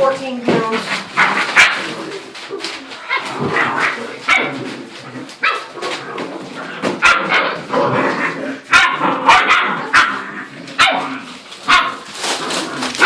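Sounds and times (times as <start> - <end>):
puppies barking: 1.1 - 4.7, 5.3 - 6.0, 6.8 - 8.0, 8.6 - 12.2.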